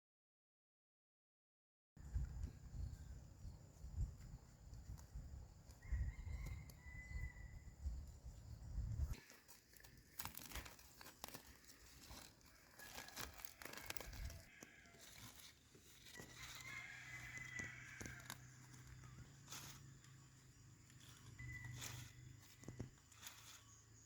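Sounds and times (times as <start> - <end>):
rustling and crackling: 9.0 - 20.2, 20.8 - 23.8
faint wavering high call: 21.0 - 23.8.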